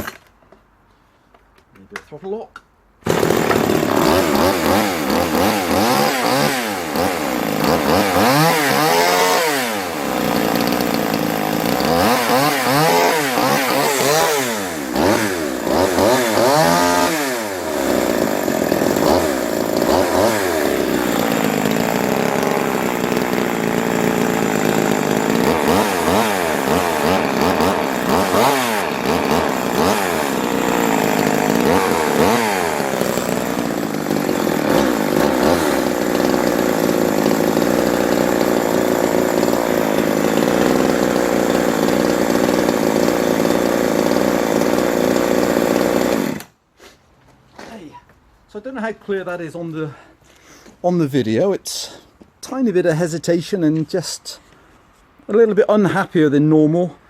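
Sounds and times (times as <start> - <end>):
chainsaw engine revving and idling: 3.0 - 46.5.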